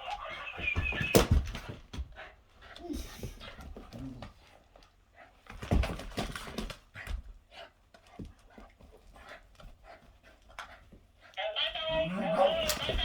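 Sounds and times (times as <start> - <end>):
dog panting: 0.1 - 13.0
knocks and scuffs: 0.3 - 4.5.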